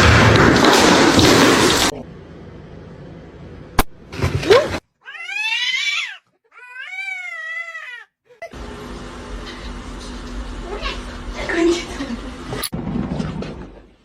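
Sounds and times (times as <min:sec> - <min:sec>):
cat meowing: 0:05.0 - 0:08.1.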